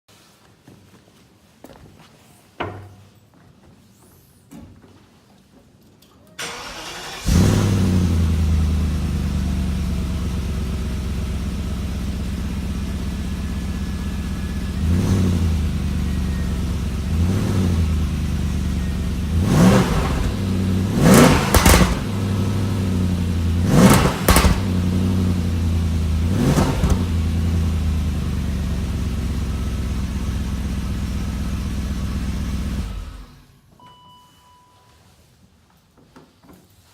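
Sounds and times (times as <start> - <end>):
car engine starting and idling: 6.4 - 33.6
car engine revving: 6.5 - 33.4.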